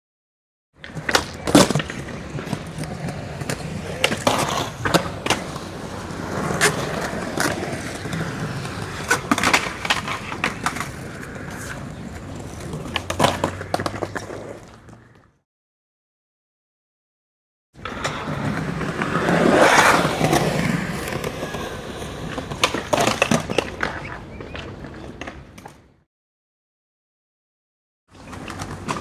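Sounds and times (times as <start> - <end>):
skateboard clacks and knocks: 0.8 - 15.0, 17.8 - 25.9
skateboard wheels rolling on pavement: 0.8 - 15.4, 17.8 - 26.1, 28.1 - 29.0.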